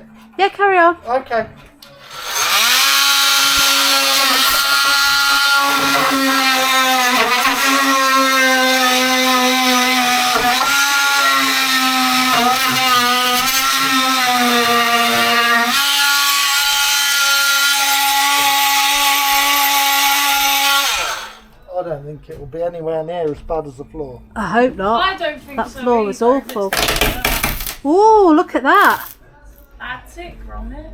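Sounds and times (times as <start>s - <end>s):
electric power tool whining: 1.8s - 21.5s.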